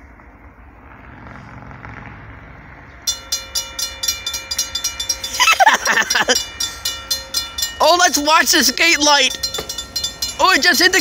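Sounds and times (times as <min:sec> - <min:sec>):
train rumbling: 0:00.0 - 0:11.0
crossing bell ringing rapidly: 0:03.0 - 0:11.0.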